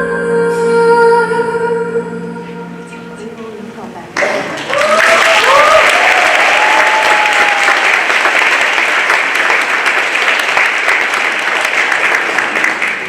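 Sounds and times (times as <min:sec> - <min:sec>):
audience applauding: 0:04.2 - 0:13.0
crowd cheering: 0:04.2 - 0:13.0.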